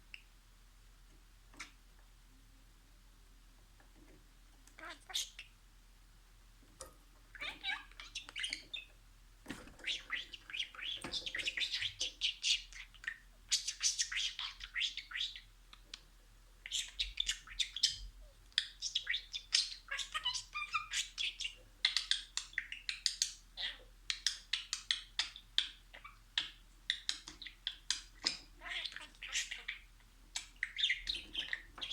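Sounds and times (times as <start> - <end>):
budgerigar chattering and warbling: 18.6 - 31.9.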